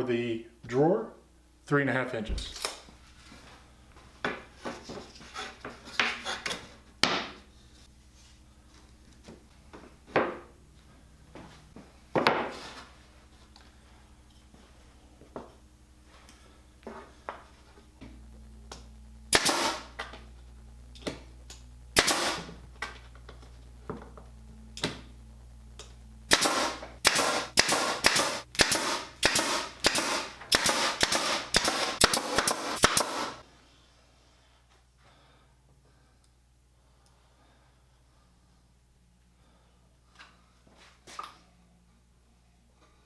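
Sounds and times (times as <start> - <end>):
nail gun pop and hiss: 19.3 - 20.1, 22.0 - 22.6, 26.3 - 33.4.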